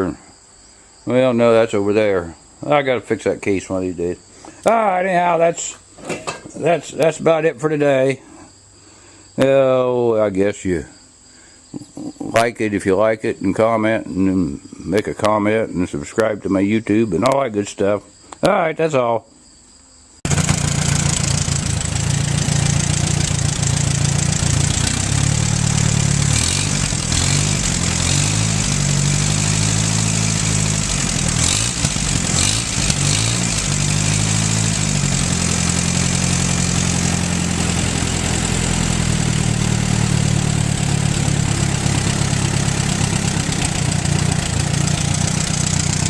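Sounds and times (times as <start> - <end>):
tractor engine running: 20.3 - 46.0.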